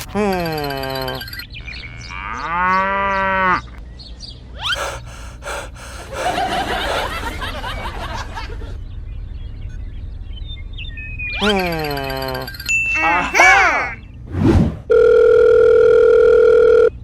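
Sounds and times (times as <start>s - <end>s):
low steady hum: 0.0s - 17.0s
gasp-like noisy breaths: 4.6s - 7.4s
person exclaiming loudly: 13.0s - 14.0s.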